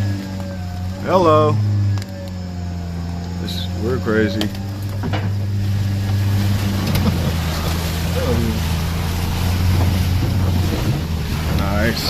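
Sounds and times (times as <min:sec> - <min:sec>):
truck engine drone: 0:00.0 - 0:12.0
tyre and wind noise hiss: 0:04.6 - 0:12.0.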